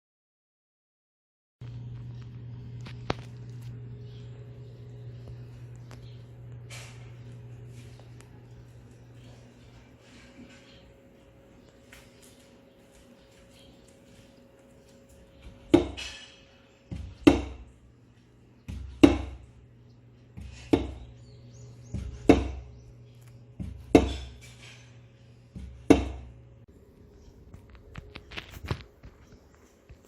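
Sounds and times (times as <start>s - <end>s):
faint steady hum: 1.6s - 30.0s
sharp wooden knocks: 15.7s - 16.0s, 16.9s - 17.6s, 18.7s - 19.4s, 21.9s - 22.6s, 23.6s - 24.3s.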